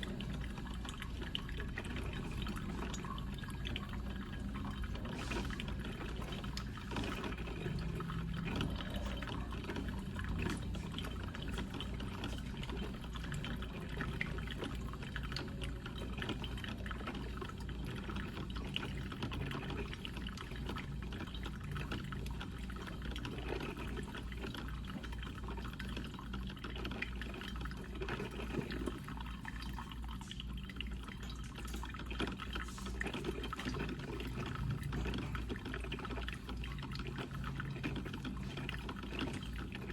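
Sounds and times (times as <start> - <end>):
coffee percolator bubbling: 0.0 - 39.9.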